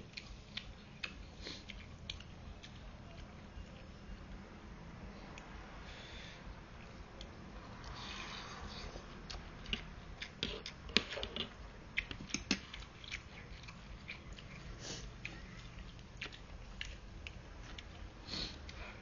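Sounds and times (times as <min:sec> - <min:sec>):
wet chewing: 0:07.8 - 0:18.8.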